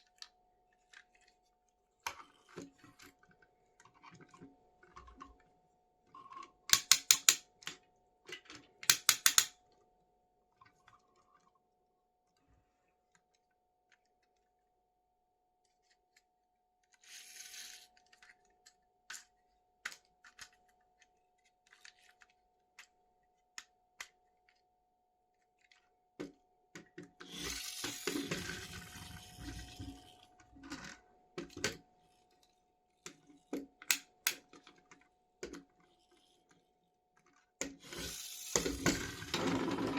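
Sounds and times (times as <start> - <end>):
sharp plastic clicks: 6.7 - 7.4, 8.9 - 9.5, 33.9 - 34.4.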